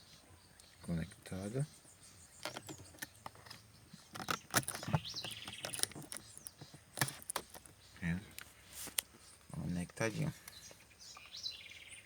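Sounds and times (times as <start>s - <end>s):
bird chirping: 0.0s - 12.0s
audio cable connectors clicking: 2.4s - 7.7s.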